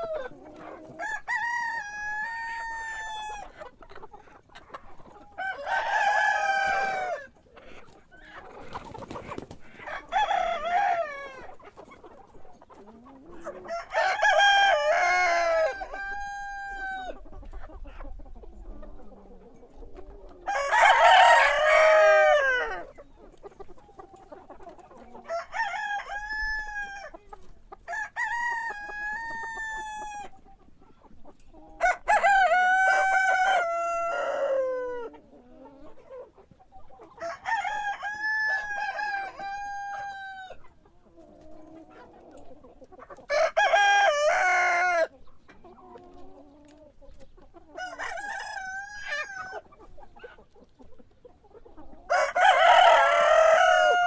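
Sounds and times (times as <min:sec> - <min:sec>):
roosters crowing: 0:00.0 - 0:03.6, 0:05.3 - 0:07.4, 0:08.3 - 0:11.6, 0:13.3 - 0:17.2, 0:20.1 - 0:22.9, 0:25.0 - 0:27.1, 0:27.8 - 0:30.3, 0:31.7 - 0:35.2, 0:37.1 - 0:40.6, 0:43.2 - 0:45.1, 0:47.7 - 0:49.7, 0:52.1 - 0:54.0.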